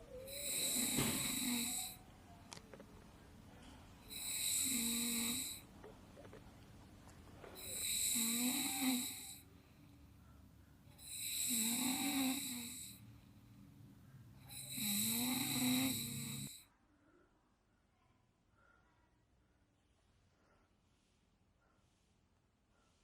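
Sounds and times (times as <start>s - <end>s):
person snoring loudly: 0.2s - 2.0s, 4.1s - 5.7s, 7.6s - 9.4s, 11.0s - 13.0s, 14.5s - 16.6s.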